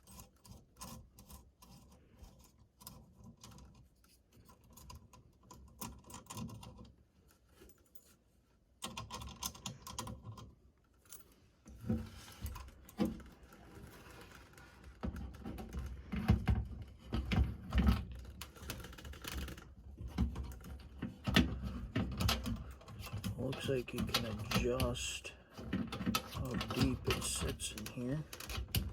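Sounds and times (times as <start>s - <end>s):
hands tapping and scraping on radio: 17.1s - 28.9s.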